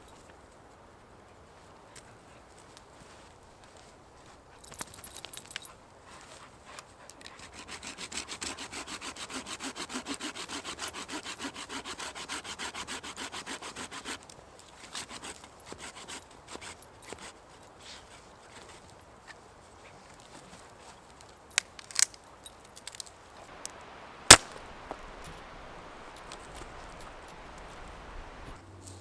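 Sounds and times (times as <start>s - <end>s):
hand saw cutting wood: 7.2s - 18.8s.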